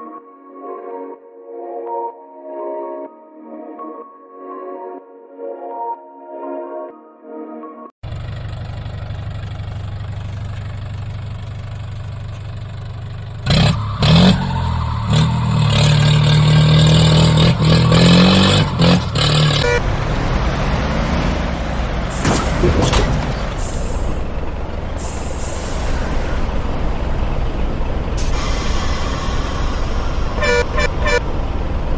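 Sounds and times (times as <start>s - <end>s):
tractor engine revving: 8.0s - 31.9s
short hiss: 28.2s - 30.7s.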